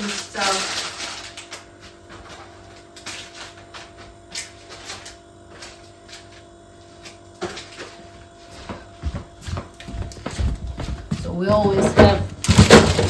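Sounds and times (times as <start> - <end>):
plastic rustling: 0.0 - 8.0, 11.2 - 13.0.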